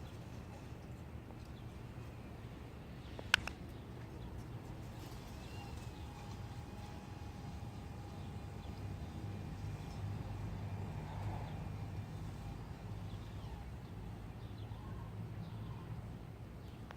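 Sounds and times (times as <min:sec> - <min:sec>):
birds chirping: 0:01.3 - 0:16.9
garage door opener motor humming: 0:04.8 - 0:14.2.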